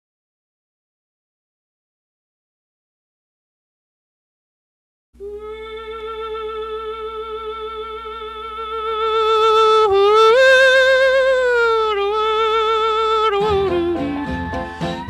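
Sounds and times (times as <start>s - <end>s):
man yodelling: 5.2s - 15.0s.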